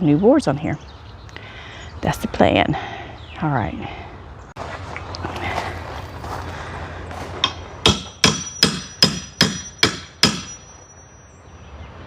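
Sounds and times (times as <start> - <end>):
hammer blows with metallic ring: 7.4 - 11.4.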